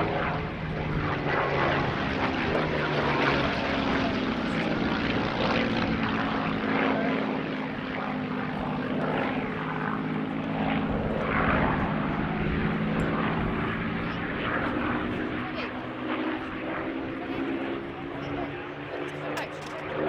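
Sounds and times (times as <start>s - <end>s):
propeller engine drone: 0.0s - 20.0s.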